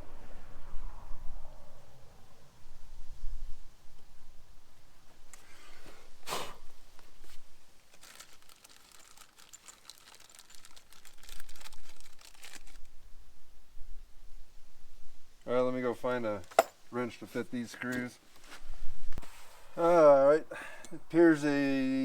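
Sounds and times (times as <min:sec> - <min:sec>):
plastic packaging crinkling: 0:07.8 - 0:12.8.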